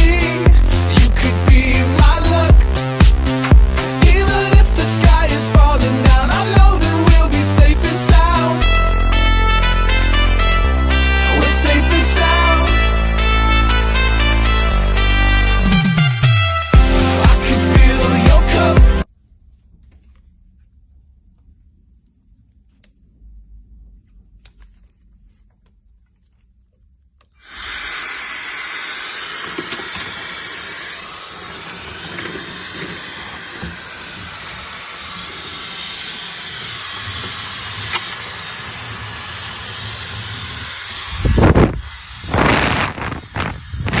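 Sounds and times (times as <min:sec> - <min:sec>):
hair dryer running: 0:27.4 - 0:44.0.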